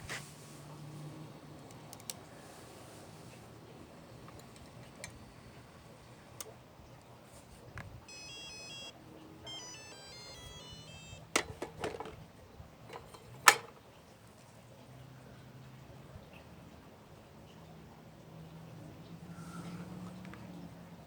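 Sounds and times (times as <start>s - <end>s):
electronic beeping tones: 8.1s - 8.9s, 9.5s - 11.3s.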